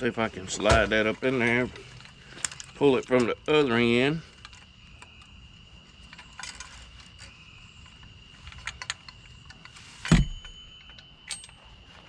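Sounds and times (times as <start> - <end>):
metal parts clicking and rattling: 1.2 - 5.1, 5.9 - 11.7.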